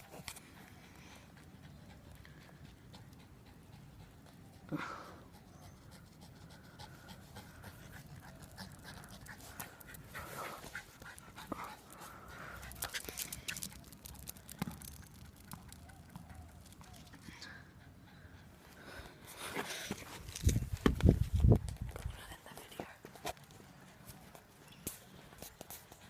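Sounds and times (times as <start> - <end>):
dog panting: 0.0 - 18.9.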